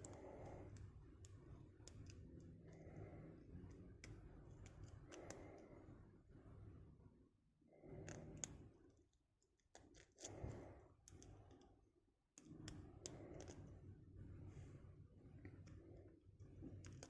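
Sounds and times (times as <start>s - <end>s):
lock pick clicking and scraping: 0.0s - 2.2s, 4.0s - 5.4s.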